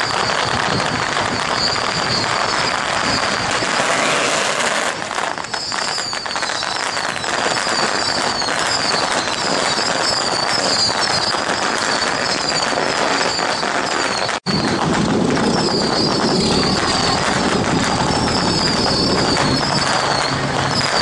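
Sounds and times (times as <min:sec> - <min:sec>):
dense crackling noise: 0:00.0 - 0:21.0
high wavering tone: 0:15.4 - 0:21.0.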